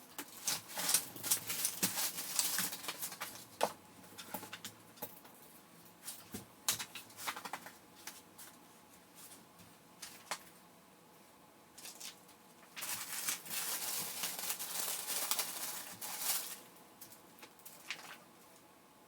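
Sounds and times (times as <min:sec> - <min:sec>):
plastic crinkling and rustling: 0:00.1 - 0:05.2, 0:06.0 - 0:08.6, 0:11.8 - 0:18.3.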